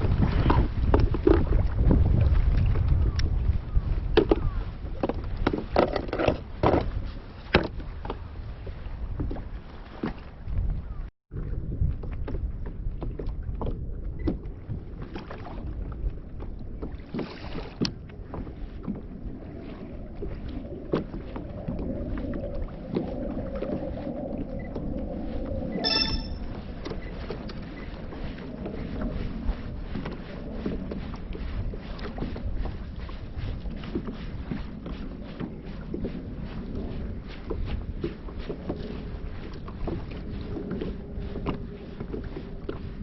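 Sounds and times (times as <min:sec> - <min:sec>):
water noise: 0:00.0 - 0:43.0
wind: 0:00.0 - 0:43.0.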